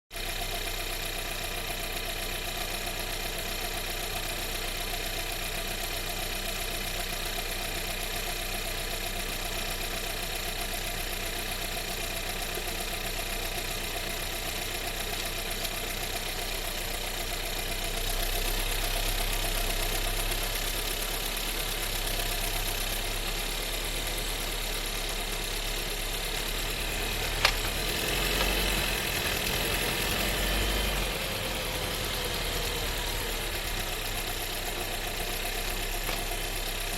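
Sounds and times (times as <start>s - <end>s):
car engine drone in cabin: 14.8s - 36.9s
sharp click: 27.3s - 28.8s.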